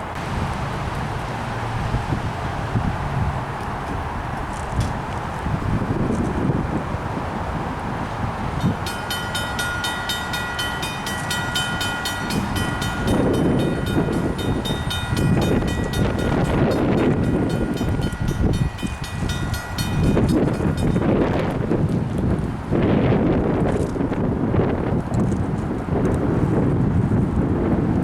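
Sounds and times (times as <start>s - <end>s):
train rumble: 0.0s - 25.9s
bell ringing rapidly: 8.6s - 21.2s.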